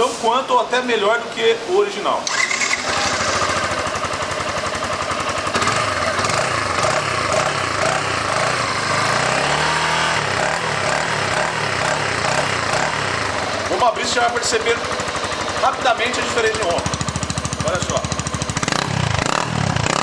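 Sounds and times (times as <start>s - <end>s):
motorcycle engine running and revving: 2.3s - 20.0s.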